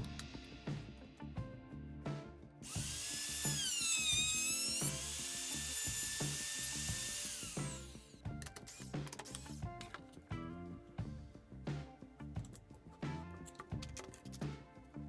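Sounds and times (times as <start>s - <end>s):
background music: 0.0s - 15.0s
power tool motor whining: 2.6s - 8.1s.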